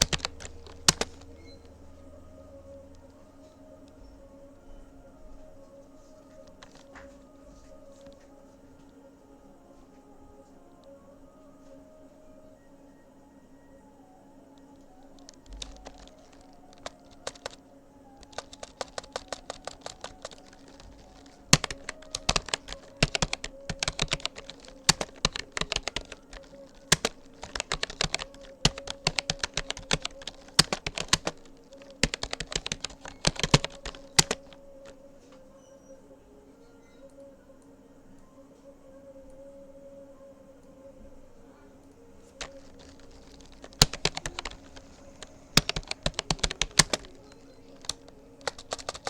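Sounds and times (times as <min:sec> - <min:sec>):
computer keyboard key clicks: 0:00.0 - 0:01.4, 0:06.4 - 0:07.0, 0:15.2 - 0:17.6, 0:18.2 - 0:34.6, 0:42.4 - 0:49.0.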